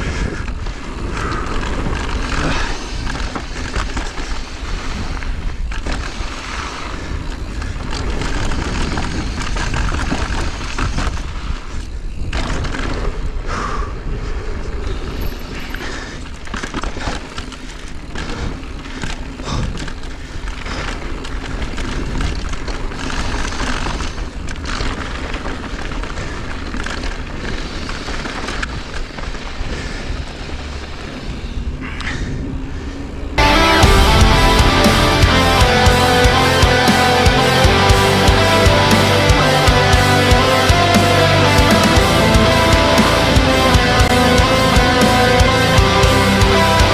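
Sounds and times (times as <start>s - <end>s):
mountain bike rumbling and rattling: 0.0s - 31.6s.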